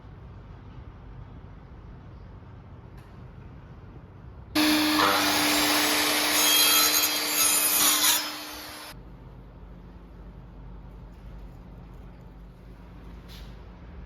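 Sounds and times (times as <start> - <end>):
circular saw cutting wood: 4.6 - 9.0.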